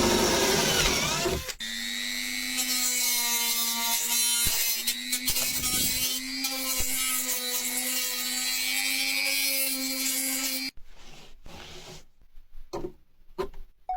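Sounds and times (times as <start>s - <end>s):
electric sander running: 0.0s - 2.2s.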